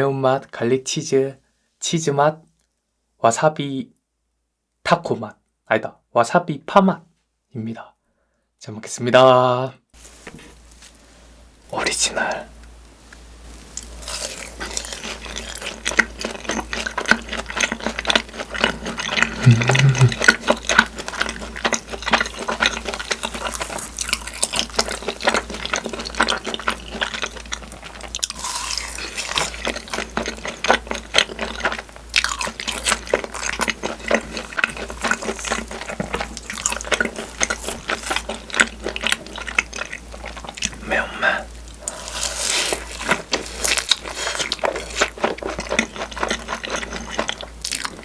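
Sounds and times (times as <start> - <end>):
wet chewing and mouth smacking: 13.7 - 40.8, 41.6 - 48.0.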